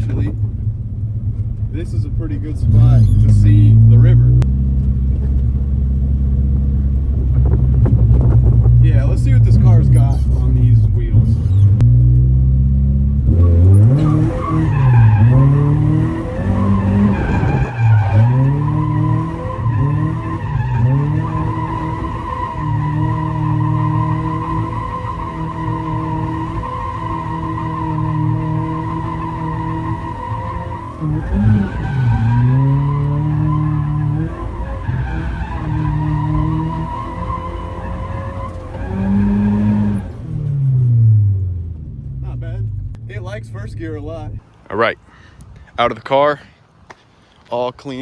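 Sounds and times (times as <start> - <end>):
car engine revving: 0.0 - 44.4
tyres squealing: 13.3 - 40.2.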